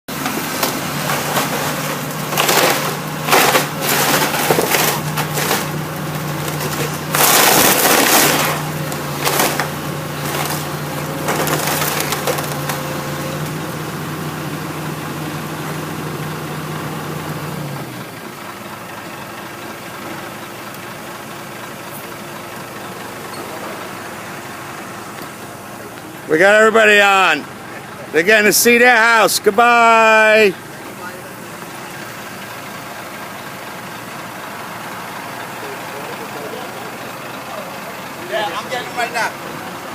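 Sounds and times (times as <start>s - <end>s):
wood splintering and crashing: 0.1s - 13.7s
heavy machine engine running: 0.1s - 39.9s.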